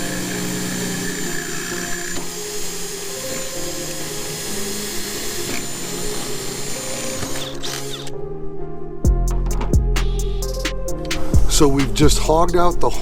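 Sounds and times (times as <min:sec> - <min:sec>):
power drill running: 0:00.0 - 0:08.1.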